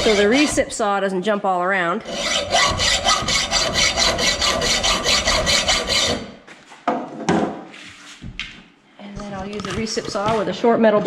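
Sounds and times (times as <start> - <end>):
hacksaw cutting metal pipe: 0.0 - 0.8, 2.0 - 6.4.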